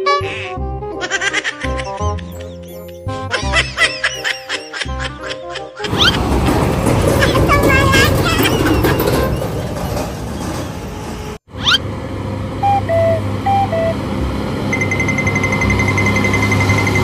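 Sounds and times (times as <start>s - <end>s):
low vehicle hum: 6.0s - 17.0s
rising electronic sweep: 12.5s - 17.0s
two-note electronic tone: 12.6s - 17.0s
rapid high-pitched beeping: 14.7s - 17.0s.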